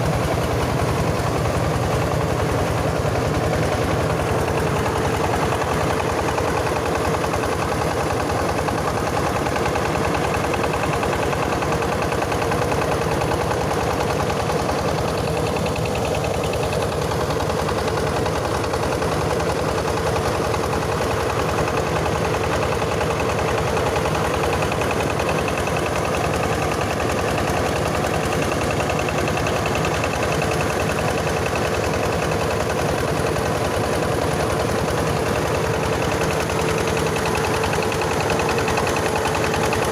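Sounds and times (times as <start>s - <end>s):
diesel engine running steadily: 0.0s - 39.9s.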